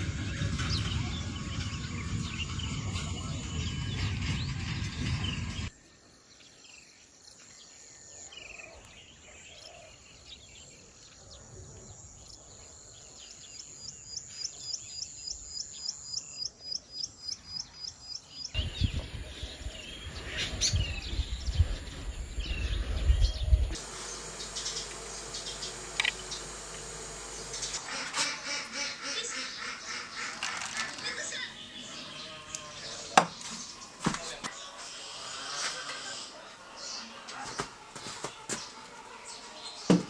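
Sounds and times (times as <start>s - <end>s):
low rumbling noise: 0.0s - 5.7s, 23.7s - 30.3s
birds chirping: 0.0s - 40.0s
high-pitched insect trill: 23.8s - 28.6s.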